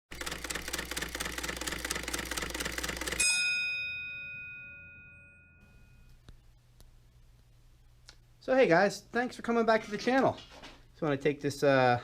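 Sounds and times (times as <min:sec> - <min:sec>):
bell-like ding: 0:03.2 - 0:06.2
low steady hum: 0:03.2 - 0:09.2.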